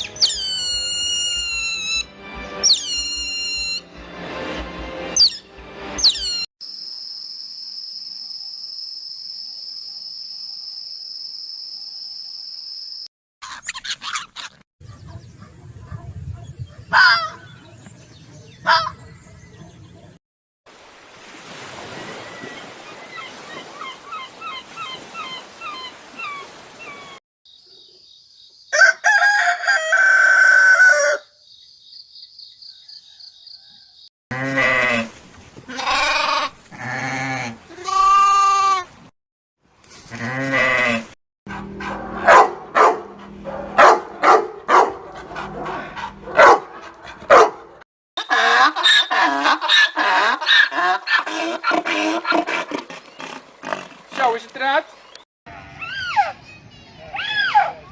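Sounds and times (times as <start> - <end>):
rooster crowing: 28.7 - 31.3
animal bleating: 35.7 - 38.8.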